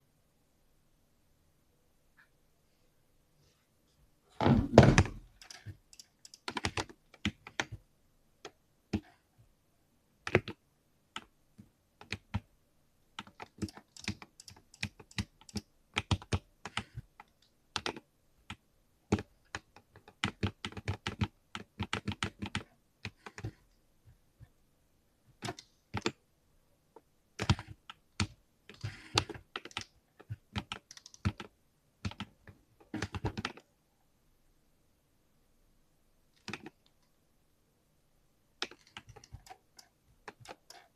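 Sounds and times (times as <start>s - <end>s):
mechanical keyboard typing: 5.0s - 7.8s, 10.2s - 10.6s, 12.0s - 12.4s, 13.2s - 23.6s, 25.4s - 26.2s, 27.4s - 33.6s, 36.4s - 36.8s, 38.6s - 40.9s.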